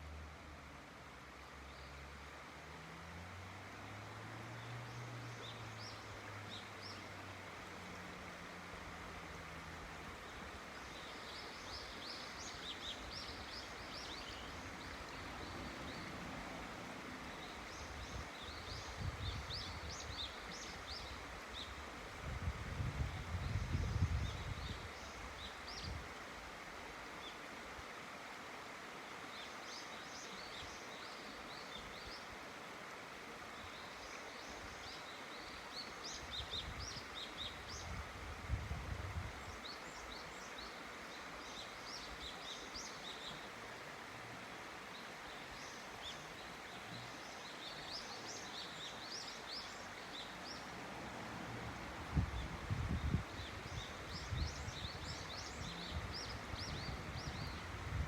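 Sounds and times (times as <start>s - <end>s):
river water rushing: 0.0s - 23.7s, 24.3s - 58.0s
small birds chirping: 44.8s - 50.9s.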